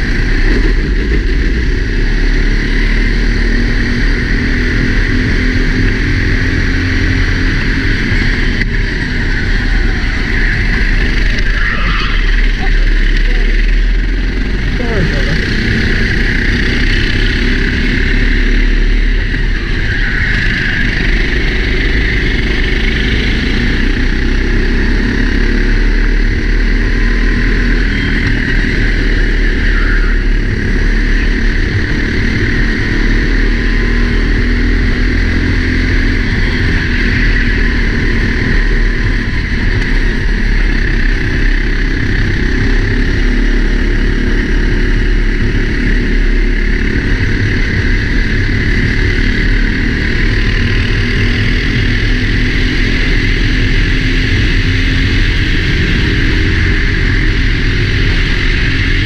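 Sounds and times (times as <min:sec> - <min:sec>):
racing kart engine: 0:00.0 - 0:59.0
wind rushing over microphone: 0:00.0 - 0:59.0.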